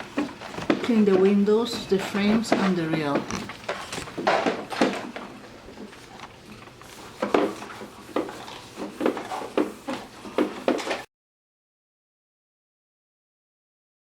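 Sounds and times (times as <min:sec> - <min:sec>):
hard objects knocking and clattering: 0:00.0 - 0:06.0, 0:07.2 - 0:11.1.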